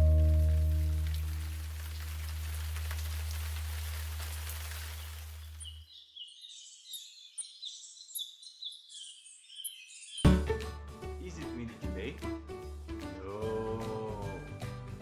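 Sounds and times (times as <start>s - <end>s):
birds chirping: 4.8s - 10.6s.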